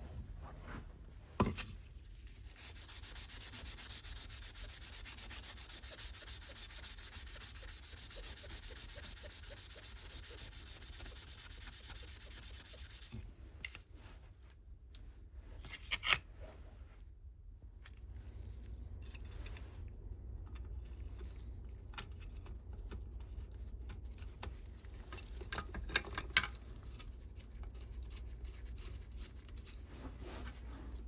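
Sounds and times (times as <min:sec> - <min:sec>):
sandpaper rubbing on metal: 0:02.2 - 0:13.2.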